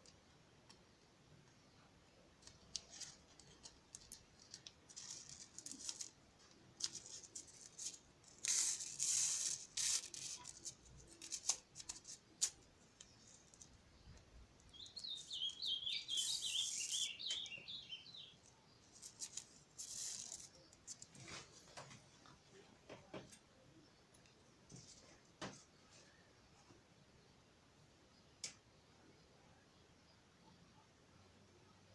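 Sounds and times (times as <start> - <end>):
bird chirping: 0.0 - 21.4.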